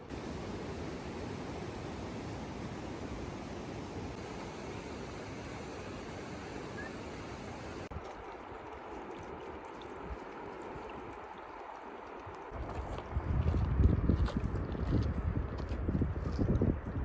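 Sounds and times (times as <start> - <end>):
running water rushing: 0.0 - 12.6
wind buffeting microphone: 12.5 - 17.0.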